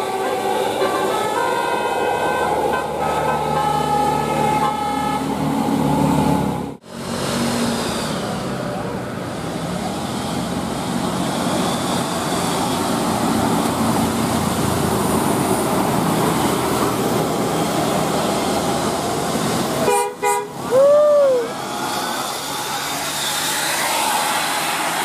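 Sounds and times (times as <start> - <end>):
multi-tone bus horn: 0.0 - 6.8, 19.8 - 20.7
bus engine and road noise: 0.0 - 25.0.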